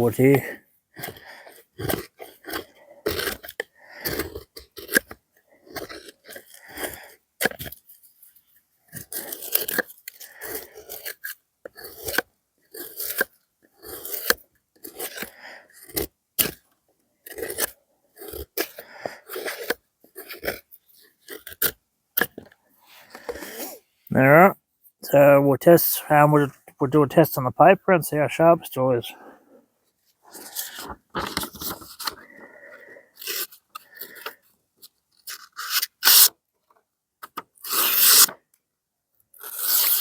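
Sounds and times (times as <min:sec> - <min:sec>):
knife blade carving hardwood: 0:01.1 - 0:05.1, 0:09.0 - 0:16.6, 0:17.3 - 0:20.6, 0:35.3 - 0:36.3, 0:37.6 - 0:38.4.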